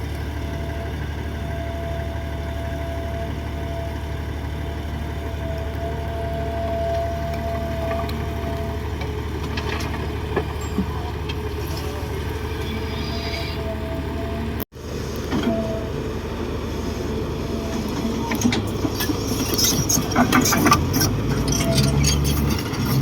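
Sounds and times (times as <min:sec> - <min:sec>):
bulldozer diesel engine running: 0:00.0 - 0:23.0.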